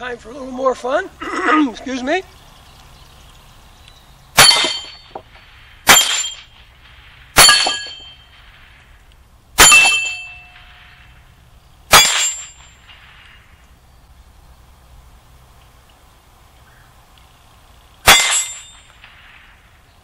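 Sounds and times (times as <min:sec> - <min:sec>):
steel targets ringing: 0:04.4 - 0:06.7, 0:07.3 - 0:08.8, 0:09.6 - 0:11.3, 0:11.9 - 0:13.5, 0:18.0 - 0:19.4
rifle shots: 0:04.4 - 0:13.6, 0:18.0 - 0:19.8.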